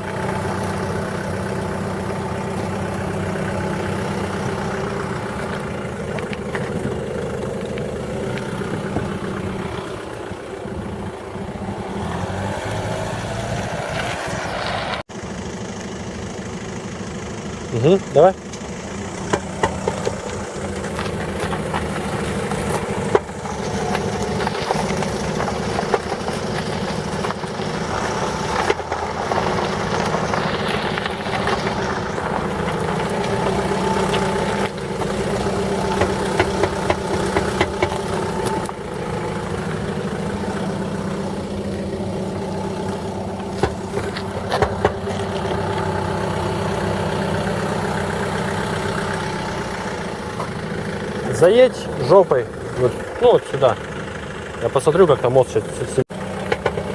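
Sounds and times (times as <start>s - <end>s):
engine running at low speed: 0.0s - 56.9s
sharp knocks: 19.2s - 20.4s, 36.0s - 38.7s.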